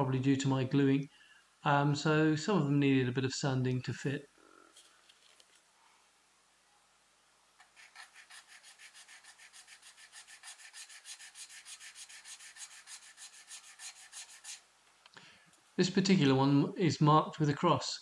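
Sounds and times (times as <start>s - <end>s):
wood tile sanding on sandpaper: 7.6s - 14.6s.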